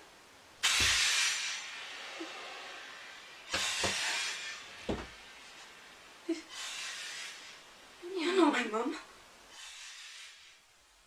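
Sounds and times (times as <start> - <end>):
loud hissing: 0.6 - 8.0, 9.4 - 10.7.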